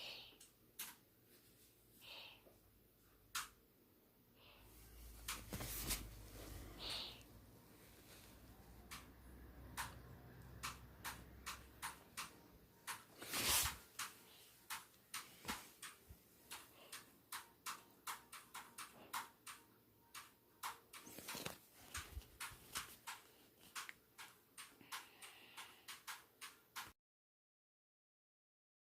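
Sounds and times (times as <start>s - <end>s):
sharp ticking: 8.8s - 13.1s, 13.9s - 26.9s.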